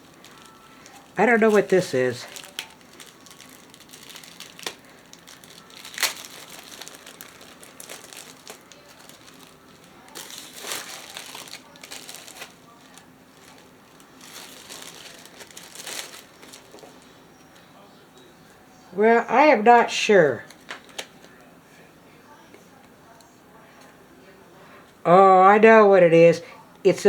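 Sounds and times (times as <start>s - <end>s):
packaging crinkling and rustling: 0.0s - 17.2s, 20.5s - 21.4s.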